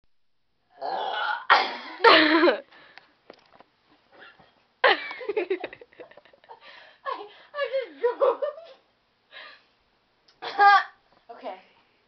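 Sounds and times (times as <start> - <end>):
person burping loudly: 0.7 - 1.9.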